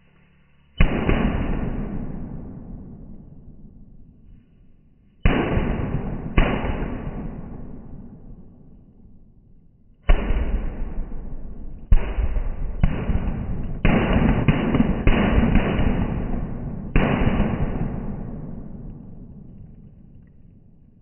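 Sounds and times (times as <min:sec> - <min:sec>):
firecrackers banging: 0:11.9 - 0:18.7.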